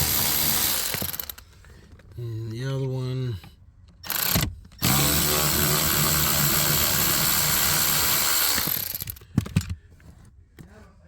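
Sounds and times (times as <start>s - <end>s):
power driver motor running: 4.1s - 9.1s.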